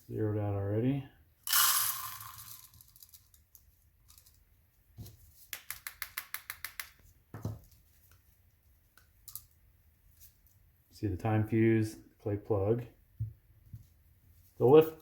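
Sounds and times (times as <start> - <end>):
grains pouring into container: 1.5 - 2.7.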